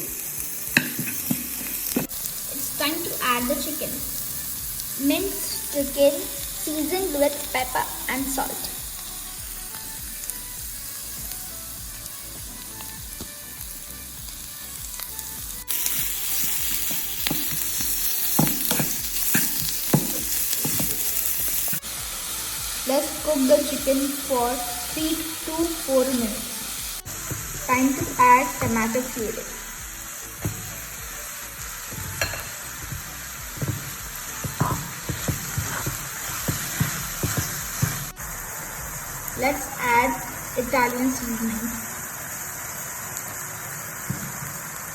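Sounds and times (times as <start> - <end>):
meat sizzling in a pan: 0.0 - 44.9
stirring scraping the pan: 31.9 - 38.2.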